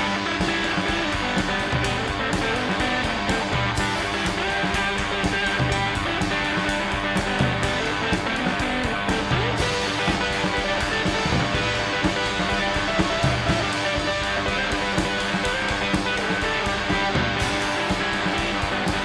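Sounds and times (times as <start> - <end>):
drum kit beat: 0.0 - 19.0
strummed electric guitar: 0.0 - 19.0.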